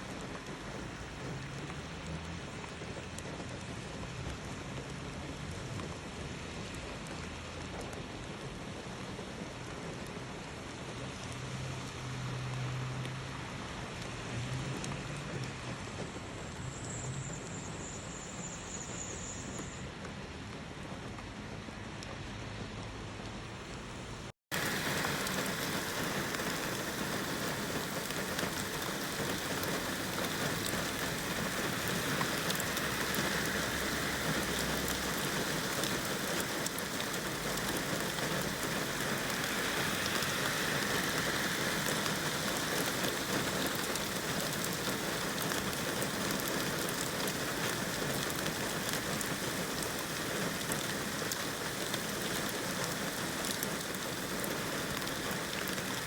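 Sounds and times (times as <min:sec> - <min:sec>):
rain falling: 0:00.0 - 0:56.0.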